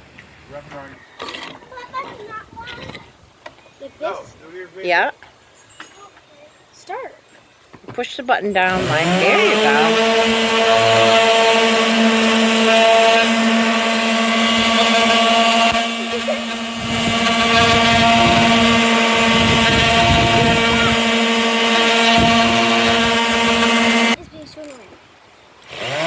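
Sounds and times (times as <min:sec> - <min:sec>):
electric sander running: 0:08.6 - 0:24.2, 0:25.7 - 0:26.0.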